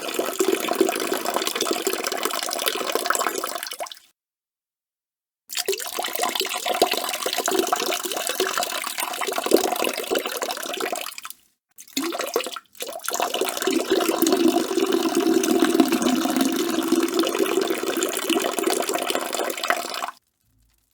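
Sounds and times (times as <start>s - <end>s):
man urinating: 13.2s - 20.1s.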